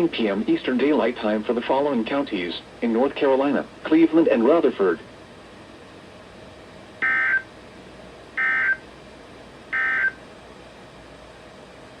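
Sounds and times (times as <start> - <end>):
buzzy two-tone data warble: 7.0 - 7.4.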